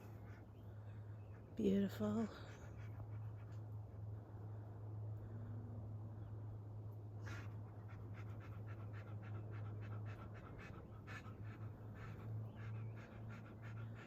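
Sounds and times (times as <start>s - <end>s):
dog panting: 0.0s - 4.2s, 7.2s - 14.0s.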